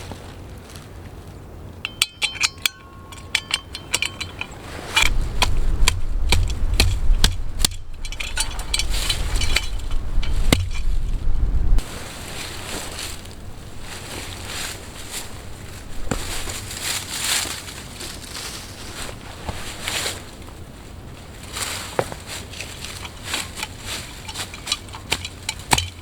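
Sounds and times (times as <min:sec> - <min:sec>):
sharp metallic clicks: 0:01.8 - 0:10.9, 0:22.6 - 0:26.0
wind rumble on microphone: 0:03.1 - 0:26.0.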